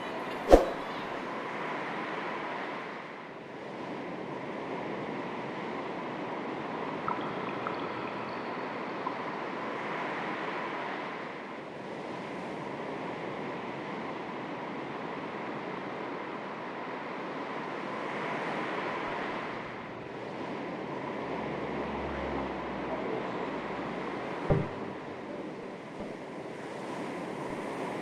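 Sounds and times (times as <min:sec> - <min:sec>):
waves lapping on shore: 0:00.0 - 0:28.0
sharp knock: 0:24.5 - 0:25.0.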